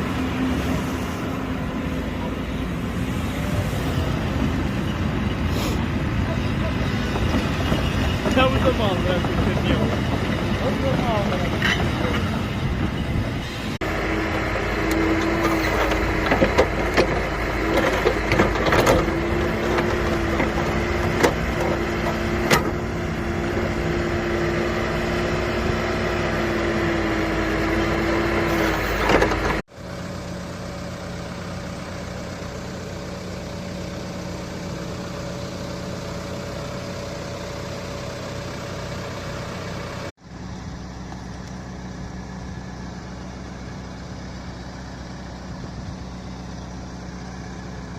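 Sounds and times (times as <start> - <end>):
construction machine engine running: 0.0 - 47.9
knocks and clanks: 6.7 - 12.6, 14.8 - 22.9.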